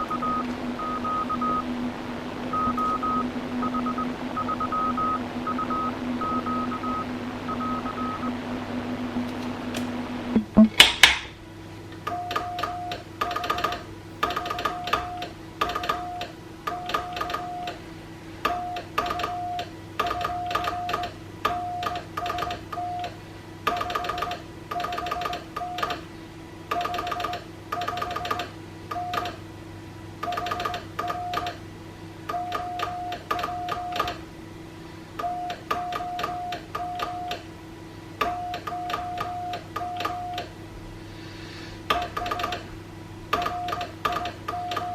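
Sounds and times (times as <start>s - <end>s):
morse code tone: 0.0s - 8.4s
steady low hum: 0.0s - 24.8s, 25.4s - 44.9s.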